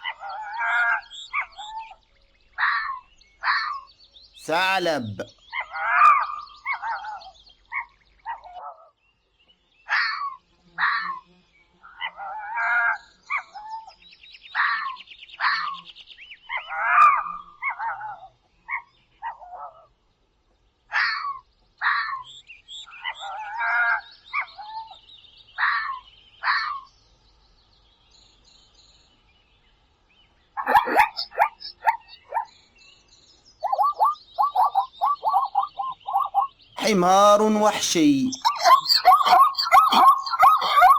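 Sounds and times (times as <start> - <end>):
fox barking and yelping: 30.6 - 32.4, 38.5 - 40.9.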